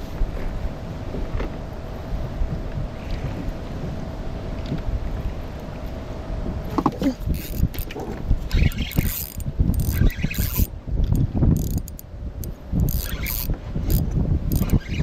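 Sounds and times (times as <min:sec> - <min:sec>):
low rumbling handling noise: 0:00.0 - 0:15.0
fishing reel clicking and whirring: 0:07.3 - 0:07.9, 0:08.5 - 0:15.0.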